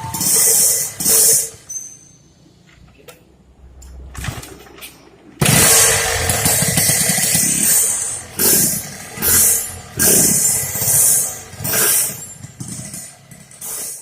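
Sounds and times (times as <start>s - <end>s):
motorcycle engine revving: 0.0s - 1.7s, 5.4s - 14.0s.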